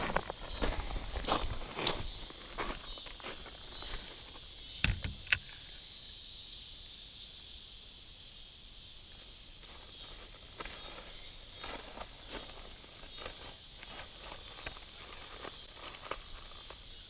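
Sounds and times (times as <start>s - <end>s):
insects droning: 0.0s - 17.0s
sharp clicks: 4.8s - 5.6s.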